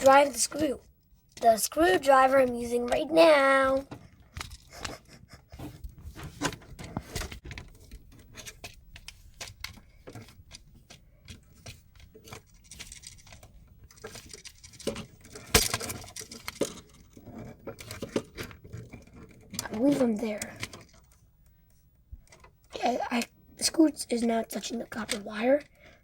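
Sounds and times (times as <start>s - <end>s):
screwdriver clicking and scraping: 3.7s - 21.0s.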